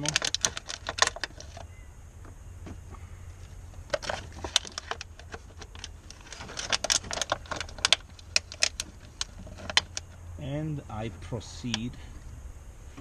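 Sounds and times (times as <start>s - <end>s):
plastic bottle clicking and crackling: 0.0s - 1.7s, 3.8s - 10.2s.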